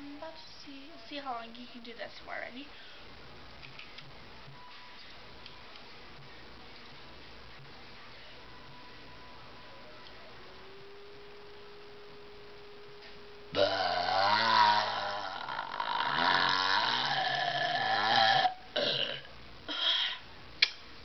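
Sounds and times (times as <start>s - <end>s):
long low burp: 13.5s - 20.2s.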